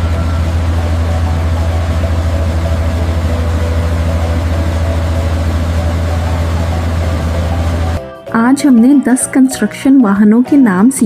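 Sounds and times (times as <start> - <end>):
diesel engine idling: 0.0 - 8.0.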